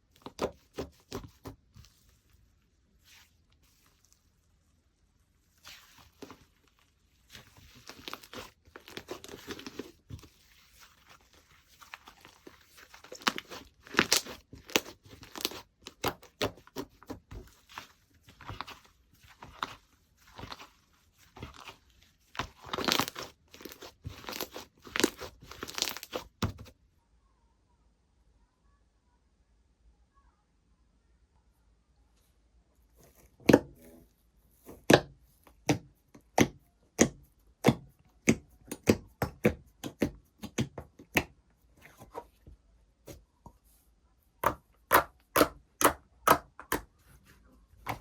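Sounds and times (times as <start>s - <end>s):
slime squishing and popping: 13.0s - 17.2s, 22.4s - 26.4s.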